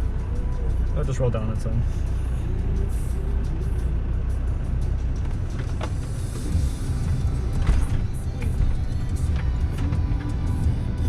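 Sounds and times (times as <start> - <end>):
diesel engine idling low: 0.0 - 11.0
vehicle body and suspension knocks: 7.1 - 10.3.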